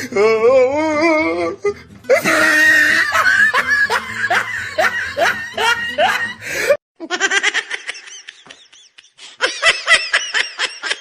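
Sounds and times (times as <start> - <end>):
music: 0.0 - 6.7
rhythmic laughter: 1.7 - 11.0.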